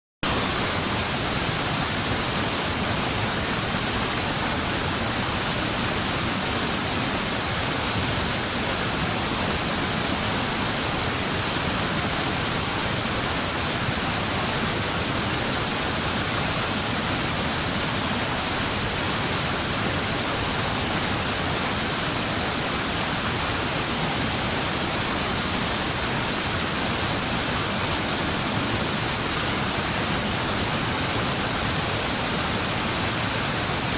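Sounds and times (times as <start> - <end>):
waterfall rushing: 0.2 - 33.9.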